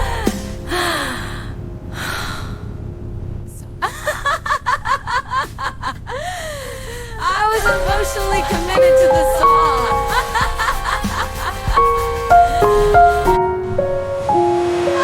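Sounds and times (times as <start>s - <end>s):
women giggling: 3.8s - 6.6s, 10.1s - 11.8s
women gasping: 6.0s - 7.5s.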